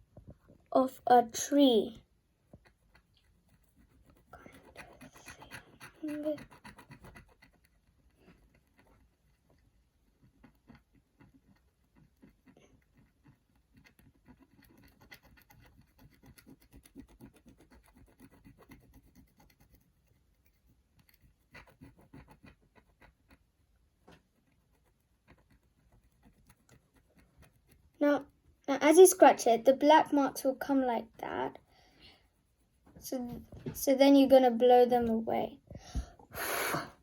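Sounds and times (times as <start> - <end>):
tool scratching paper: 2.6 - 9.5, 10.3 - 28.3.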